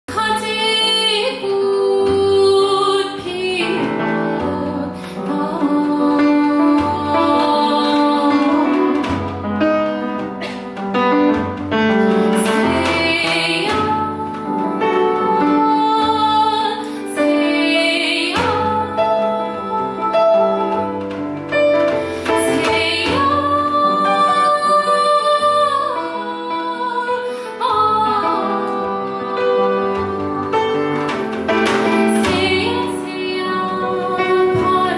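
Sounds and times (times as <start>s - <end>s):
piano: 0.0s - 34.9s
woman singing slow melody: 0.1s - 9.0s, 22.3s - 30.5s
percussion: 0.1s - 34.9s.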